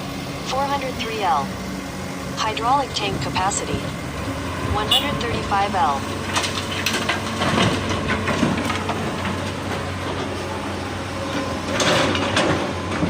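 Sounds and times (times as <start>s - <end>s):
diesel engine running: 0.0s - 13.0s
knocks and clanks: 6.2s - 10.3s, 11.3s - 13.0s.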